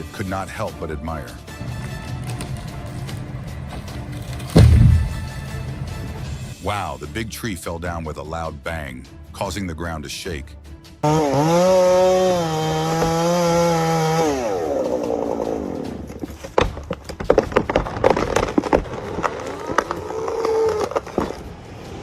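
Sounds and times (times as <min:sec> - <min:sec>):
wood cracking and crashing: 0:01.6 - 0:05.8, 0:11.8 - 0:21.6
chainsaw running: 0:11.0 - 0:16.4.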